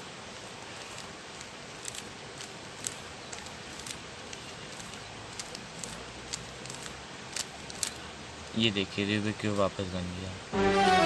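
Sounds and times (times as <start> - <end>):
steady hiss: 0.0 - 10.6
puzzle cube layers clicking: 0.4 - 8.0.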